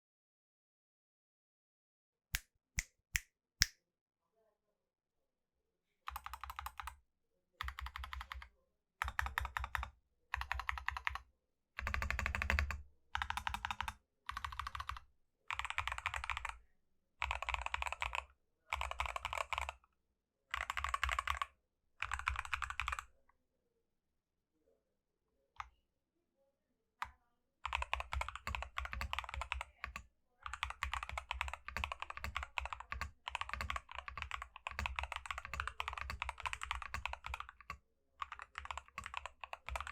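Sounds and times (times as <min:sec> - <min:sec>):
mechanical keyboard typing: 0:06.1 - 0:07.0, 0:07.6 - 0:11.2, 0:11.8 - 0:16.6, 0:17.2 - 0:19.8, 0:20.5 - 0:23.1, 0:27.6 - 0:39.9.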